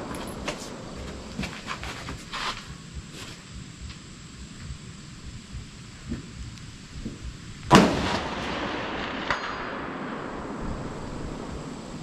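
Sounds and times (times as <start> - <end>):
bullet ringing steel target: 7.7 - 10.4
rifle shot echoing: 7.7 - 11.9.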